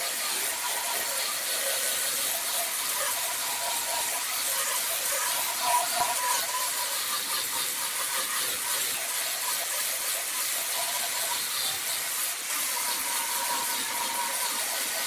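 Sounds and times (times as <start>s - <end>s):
wood lathe hissing: 0.0s - 15.0s.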